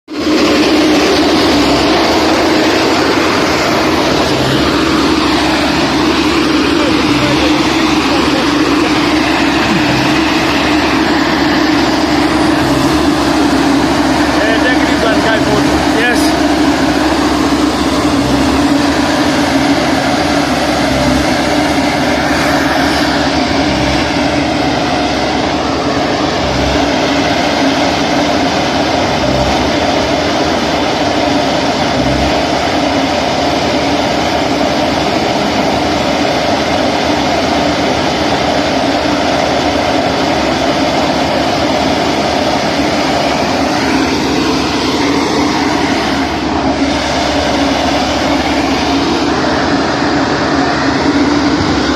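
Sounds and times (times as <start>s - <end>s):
concrete mixer pump humming: 0.0s - 51.9s
short low thumps: 15.3s - 28.2s, 29.1s - 30.0s.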